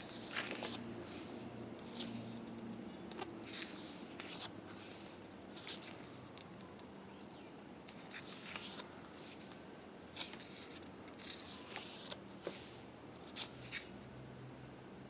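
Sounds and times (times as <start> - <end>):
pages turning: 0.0 - 2.5, 3.1 - 6.2, 7.9 - 13.9.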